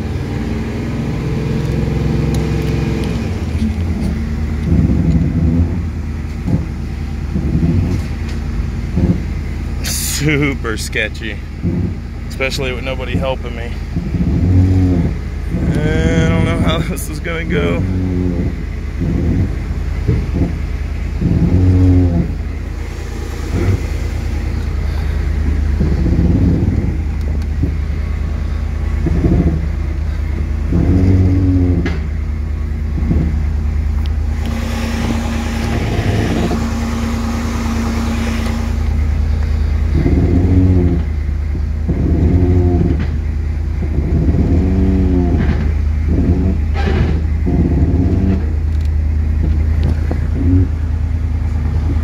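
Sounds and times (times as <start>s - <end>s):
car engine revving: 0.0s - 52.0s
hiss with faint whine: 6.9s - 45.3s.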